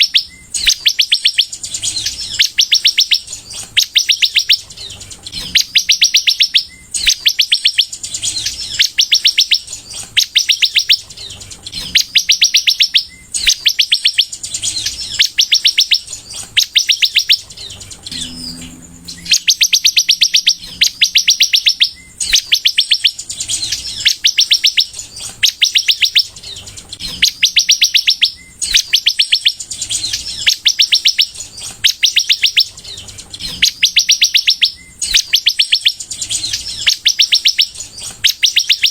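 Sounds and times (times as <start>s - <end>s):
sunbird chattering song: 0.0s - 38.9s
low hum: 17.0s - 23.6s.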